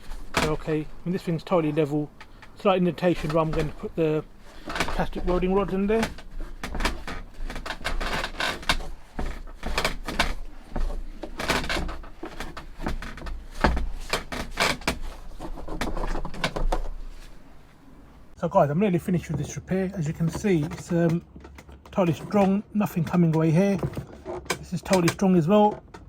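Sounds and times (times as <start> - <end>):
tools scraping and knocking plastic: 0.0 - 17.5, 19.0 - 26.0.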